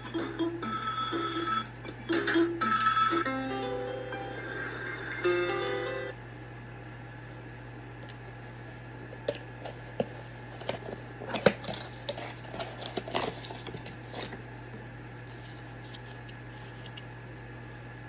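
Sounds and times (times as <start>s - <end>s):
steady low hum: 0.0s - 18.0s
handling clicks and rustles: 9.2s - 14.4s.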